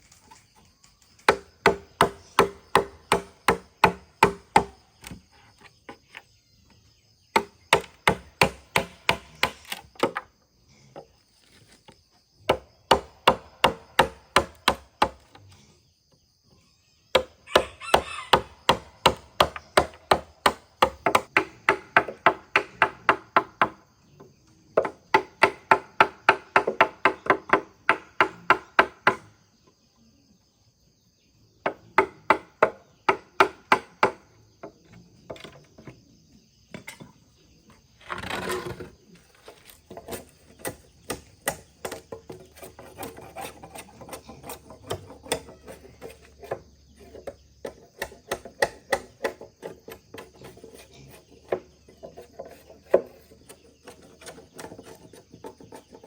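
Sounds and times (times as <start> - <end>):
blade chopping bamboo: 7.4 - 10.2, 39.6 - 50.8.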